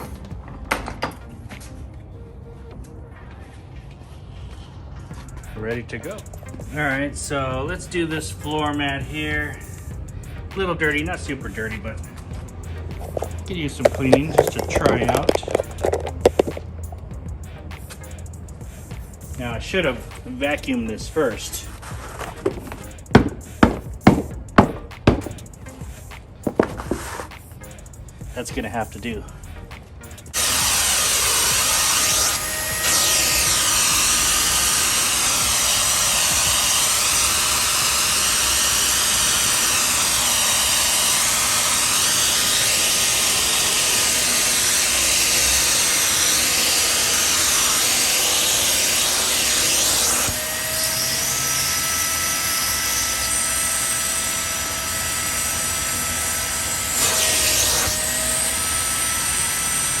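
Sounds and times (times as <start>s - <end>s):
wet dry vacuum motor whining: 30.4s - 60.0s.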